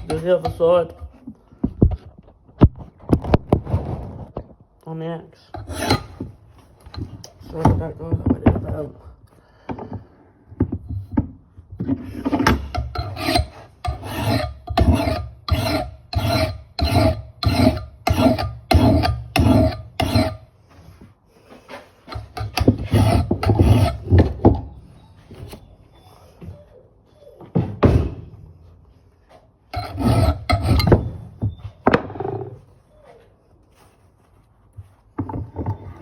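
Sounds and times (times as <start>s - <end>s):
file rasping on steel: 0.0s - 1.0s, 5.5s - 7.2s, 12.2s - 20.5s, 22.1s - 24.7s, 29.7s - 31.2s.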